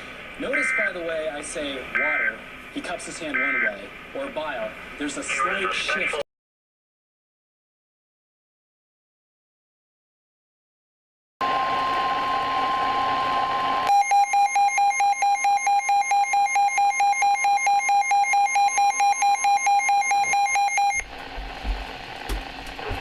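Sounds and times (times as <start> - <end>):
radio hiss: 0.1 - 6.2, 21.1 - 23.0
harsh pulsing alarm tone: 3.4 - 3.8, 11.4 - 23.0.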